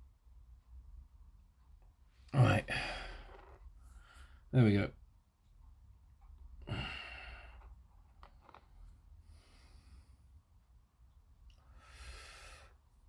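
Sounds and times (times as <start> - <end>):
man sighing: 2.4 - 3.4, 6.6 - 7.5
faint breathing: 2.6 - 4.5, 6.6 - 7.8, 9.2 - 10.4, 11.6 - 12.8.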